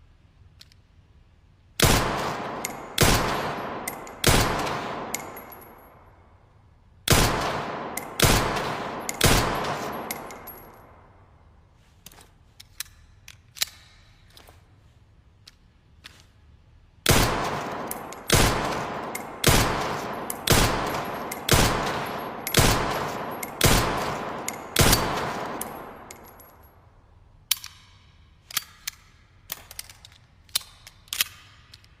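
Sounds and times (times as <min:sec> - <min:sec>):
handgun shots echoing: 0:01.8 - 0:06.0, 0:07.1 - 0:11.1, 0:17.1 - 0:26.8.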